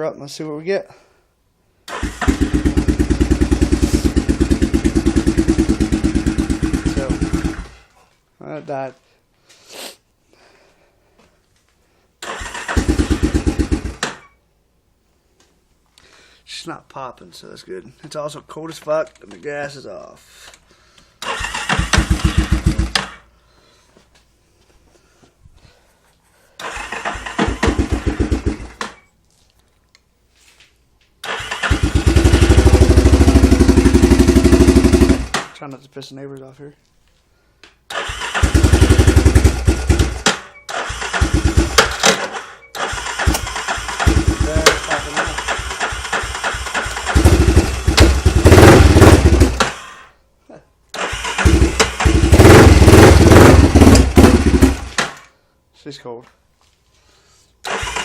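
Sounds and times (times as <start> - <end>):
quad engine starting and running: 1.9 - 7.9, 12.2 - 14.3, 21.2 - 23.2, 26.6 - 29.0, 31.2 - 35.6, 37.9 - 50.1, 50.9 - 55.2, 57.6 - 58.0.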